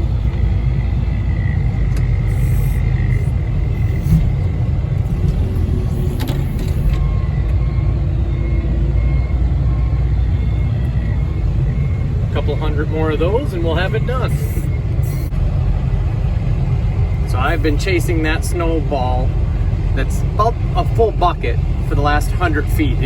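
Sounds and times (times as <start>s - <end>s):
faint steady whine: 0.0s - 7.7s
machine engine rumbling: 0.0s - 23.0s.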